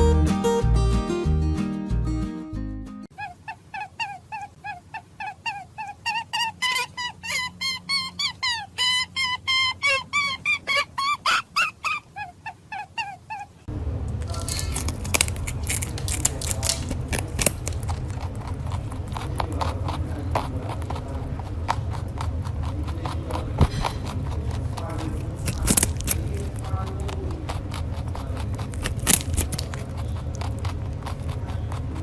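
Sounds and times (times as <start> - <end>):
repeated pitched notes: 0.0 - 3.1
steady low hum: 13.6 - 32.0
rabbit clicks taps and scrapes: 14.4 - 32.0.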